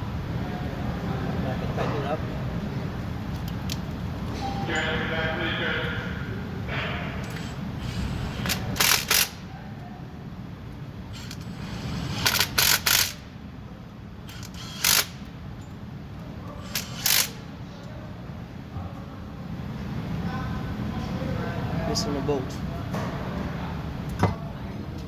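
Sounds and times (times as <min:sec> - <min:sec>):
steady low hum: 0:00.0 - 0:25.0
ratchet wrench clicking: 0:07.3 - 0:09.4, 0:11.2 - 0:13.2, 0:14.3 - 0:15.7, 0:16.6 - 0:17.4.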